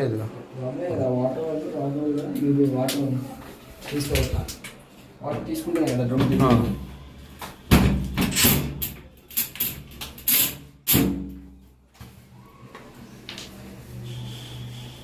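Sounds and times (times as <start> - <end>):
washing machine panels banging: 7.7 - 8.9.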